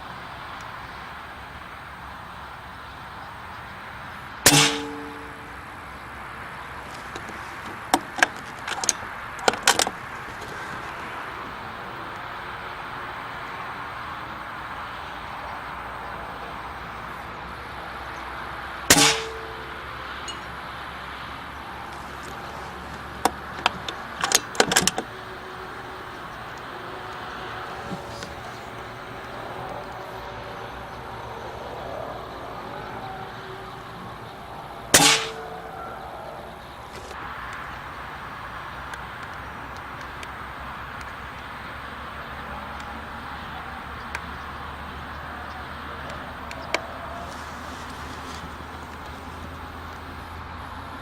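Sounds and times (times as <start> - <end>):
air rifle shot with metallic ring: 4.5 - 5.5, 18.9 - 19.7, 35.0 - 35.5.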